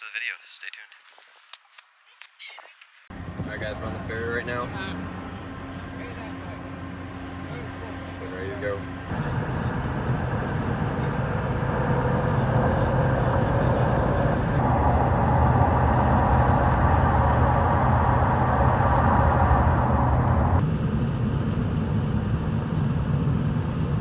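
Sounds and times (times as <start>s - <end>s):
vehicle engine hum: 3.1s - 24.0s
bright rushing noise: 11.7s - 20.6s.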